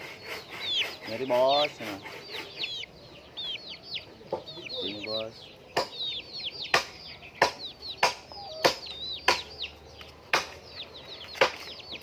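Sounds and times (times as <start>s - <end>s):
chicks peeping: 0.0s - 12.0s
sharp knocks: 5.8s - 6.1s, 6.7s - 9.6s, 10.3s - 10.6s, 11.4s - 11.7s.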